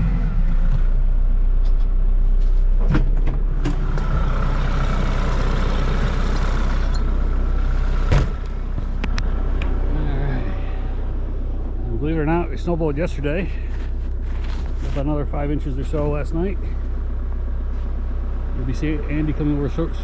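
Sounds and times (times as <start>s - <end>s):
tractor diesel engine running: 0.0s - 20.0s
clunks and rattles: 1.6s - 5.0s, 5.6s - 9.8s.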